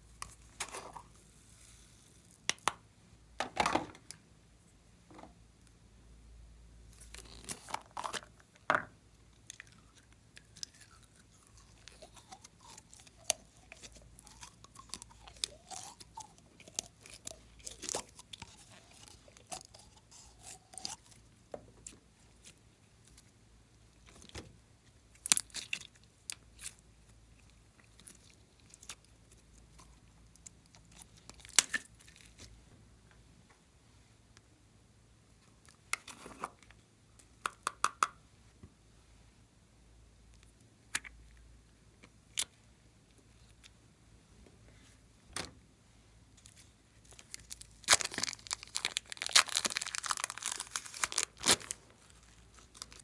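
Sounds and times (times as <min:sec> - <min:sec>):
slime squished by hand: 0:46.5 - 0:53.0.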